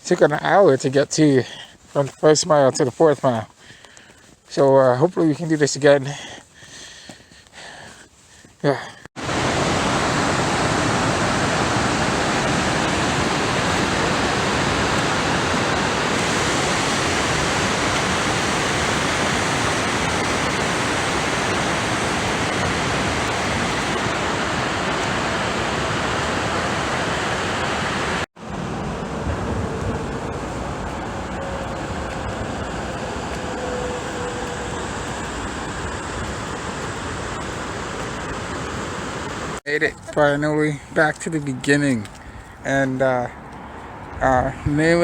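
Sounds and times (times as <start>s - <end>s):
loud steady rushing noise: 9.2s - 39.6s.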